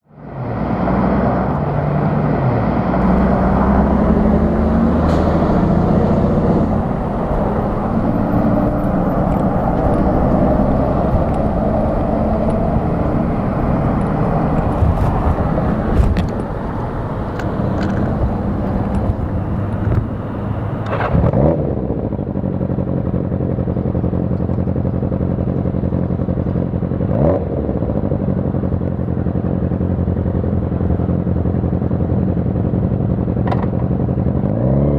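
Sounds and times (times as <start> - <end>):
motorcycle engine running: 3.0 - 21.1.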